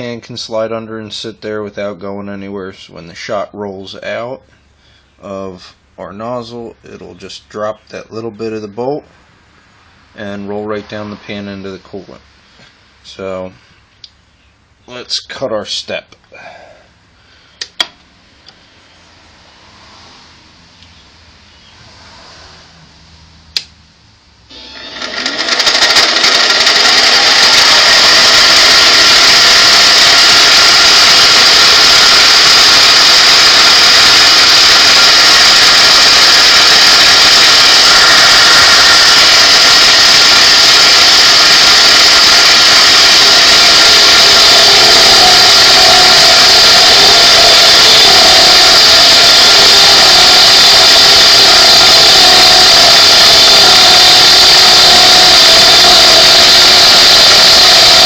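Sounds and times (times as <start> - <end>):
metal lathe cutting metal: 24.5 - 58.0.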